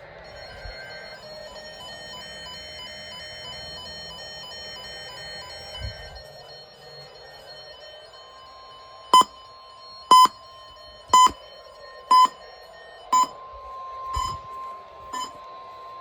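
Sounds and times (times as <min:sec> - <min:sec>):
steady alarm tone: 0:00.0 - 0:15.4
receiver alert beeping: 0:01.9 - 0:13.4, 0:14.2 - 0:14.5, 0:15.2 - 0:15.4.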